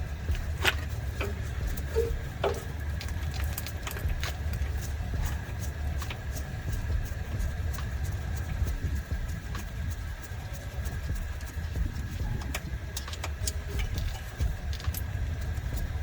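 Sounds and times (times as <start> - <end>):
car engine idling: 0.0 - 16.0
clicks and knocks of tools: 0.3 - 4.6, 12.4 - 15.1.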